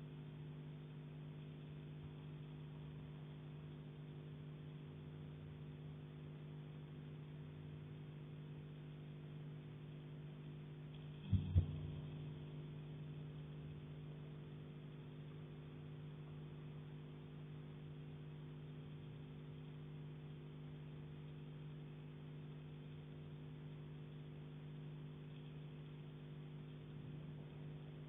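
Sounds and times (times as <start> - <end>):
low hum with held tones: 0.0 - 28.0.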